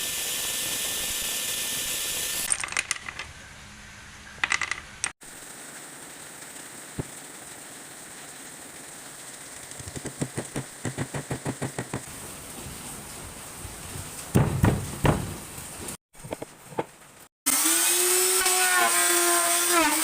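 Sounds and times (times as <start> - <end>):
steady hiss: 5.3 - 10.8
light even tapping: 9.7 - 12.1
louder knocks: 14.4 - 15.4.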